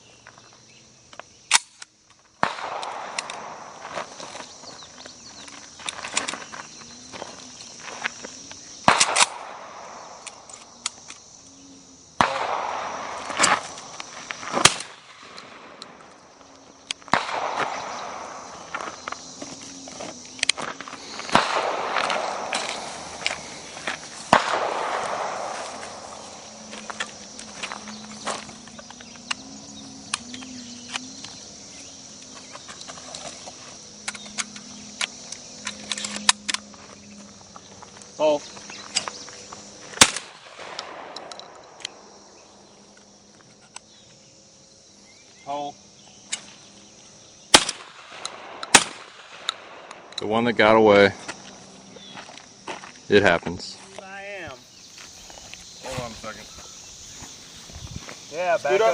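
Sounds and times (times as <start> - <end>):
insects buzzing: 0.0 - 58.9
shotgun shots: 2.4 - 3.8, 8.8 - 10.2, 12.2 - 13.7, 17.0 - 18.4, 21.2 - 23.2, 24.3 - 26.4, 40.0 - 41.8, 47.5 - 50.0.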